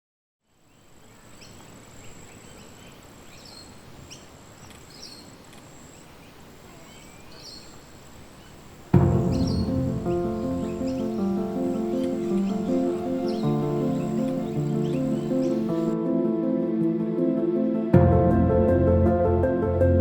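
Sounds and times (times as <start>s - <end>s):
bird chirps: 0.7s - 16.0s
low rushing noise: 8.2s - 16.0s.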